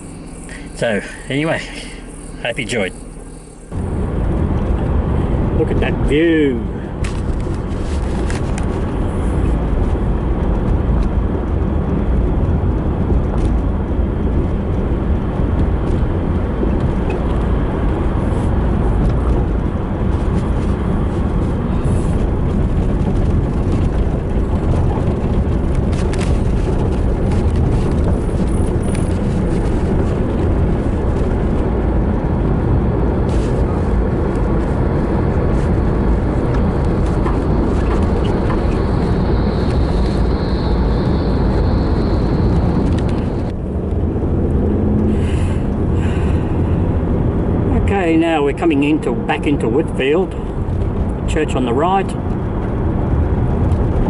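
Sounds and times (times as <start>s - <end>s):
car engine and road rumble: 0.0s - 54.0s.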